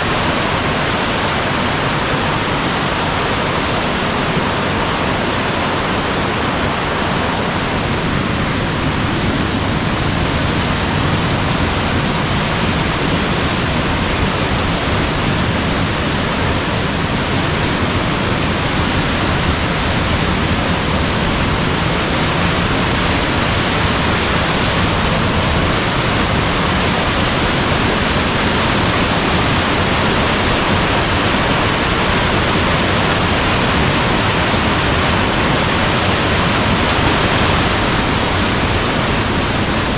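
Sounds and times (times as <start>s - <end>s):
stream rushing over rocks: 0.0s - 39.9s.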